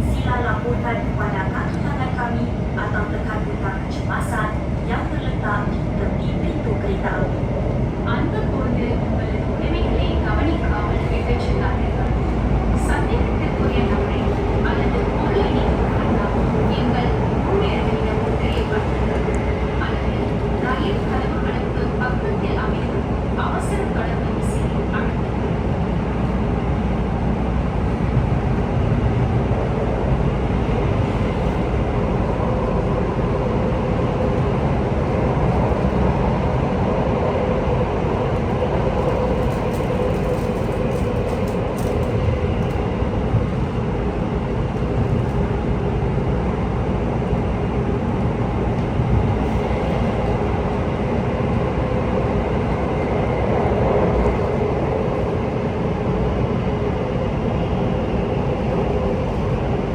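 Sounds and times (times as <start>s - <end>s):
wheels rumbling on rail: 0.0s - 59.9s.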